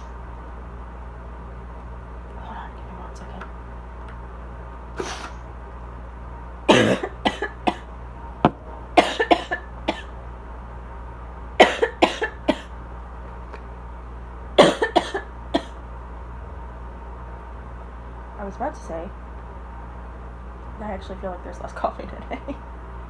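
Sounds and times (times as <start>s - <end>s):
air conditioner humming: 0.0s - 23.0s
woman coughing: 6.7s - 7.9s, 9.0s - 10.1s, 11.6s - 12.7s, 14.6s - 15.8s.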